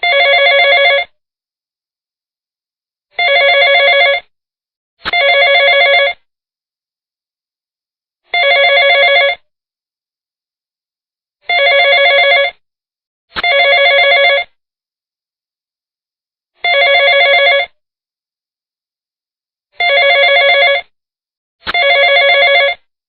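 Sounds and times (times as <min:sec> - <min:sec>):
telephone ringing: 0:00.0 - 0:01.1, 0:03.2 - 0:04.3, 0:05.1 - 0:06.2, 0:08.3 - 0:09.4, 0:11.5 - 0:12.6, 0:13.4 - 0:14.5, 0:16.6 - 0:17.8, 0:19.8 - 0:20.9, 0:21.7 - 0:22.8.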